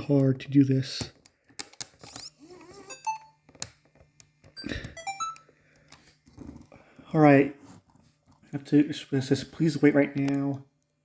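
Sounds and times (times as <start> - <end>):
camcorder beeping: 4.6 - 5.5.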